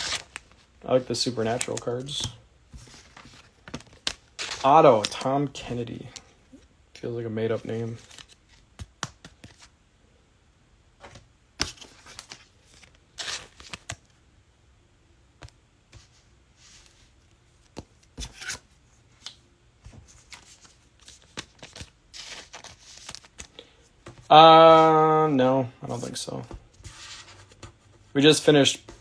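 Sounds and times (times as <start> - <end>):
cards clicking and tapping: 1.2 - 5.3, 8.0 - 9.7
cards sliding swishes: 15.4 - 25.1.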